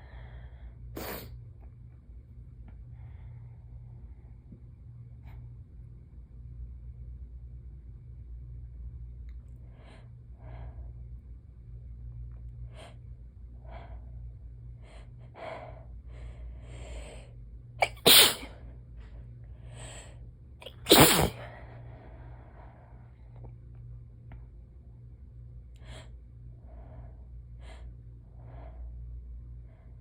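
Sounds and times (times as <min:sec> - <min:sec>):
person sneezing: 0:01.0 - 0:01.3, 0:17.8 - 0:18.6, 0:20.6 - 0:21.4.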